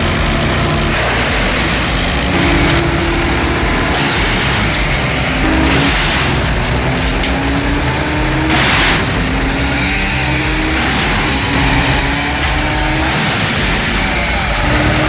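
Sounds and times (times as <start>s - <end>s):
heavy machine engine running: 0.0s - 15.0s.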